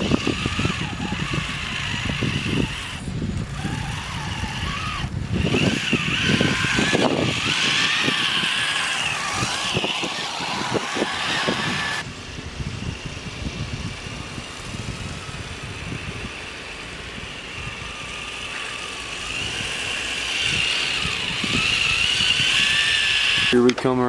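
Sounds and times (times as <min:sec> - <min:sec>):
electric motor whining: 0:00.0 - 0:23.8.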